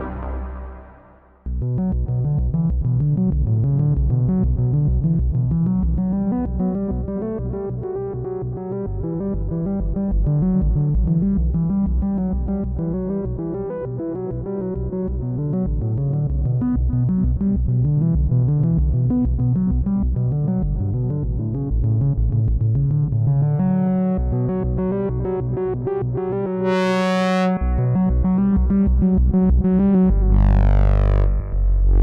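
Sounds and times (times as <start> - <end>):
synthesizer sequenced pattern: 0.0 - 1.2
synthesizer bass line: 0.0 - 5.4, 15.8 - 32.0
deep low note with sweeping filter: 0.0 - 13.5, 14.8 - 32.0.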